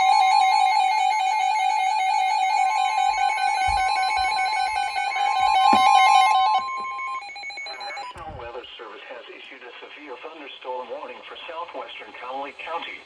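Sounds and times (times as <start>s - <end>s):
loud steady alarm tone: 0.0s - 8.6s.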